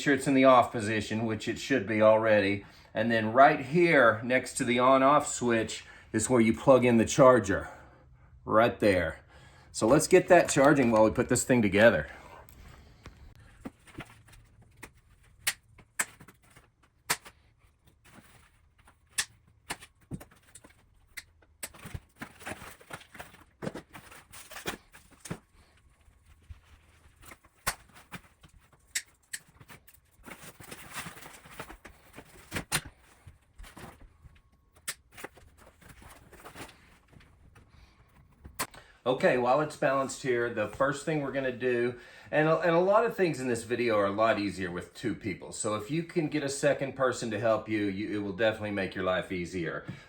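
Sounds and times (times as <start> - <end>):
packaging rustling: 12.5 - 38.5.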